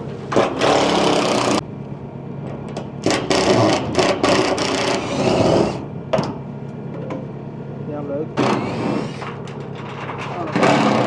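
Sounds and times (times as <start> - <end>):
rattling mechanical noise: 0.0 - 1.7, 2.4 - 7.3, 8.2 - 11.0.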